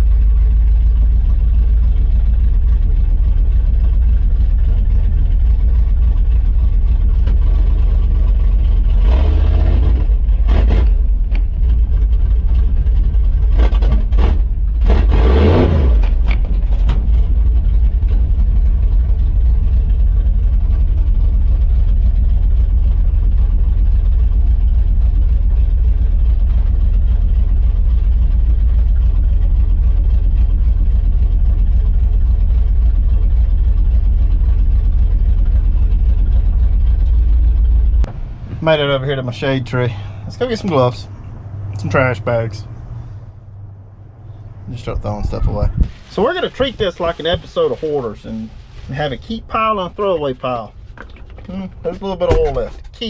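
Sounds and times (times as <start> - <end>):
truck engine running: 0.0 - 53.0.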